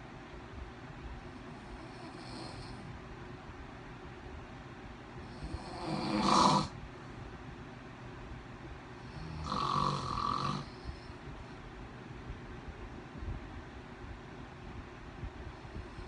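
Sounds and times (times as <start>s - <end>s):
man snoring: 1.7s - 2.8s, 5.3s - 6.8s, 9.0s - 11.0s.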